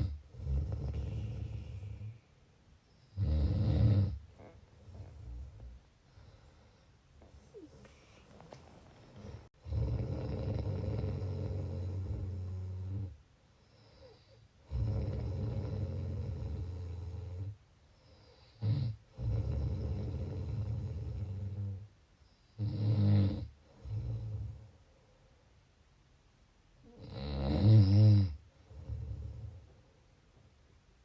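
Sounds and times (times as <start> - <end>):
person snoring: 0.0 - 2.2, 3.1 - 6.4, 9.2 - 13.1, 13.9 - 17.5.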